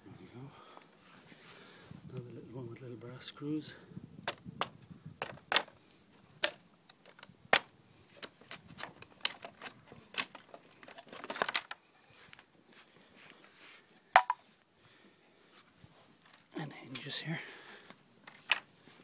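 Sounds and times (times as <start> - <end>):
kayak frame parts clicking: 6.4 - 11.8.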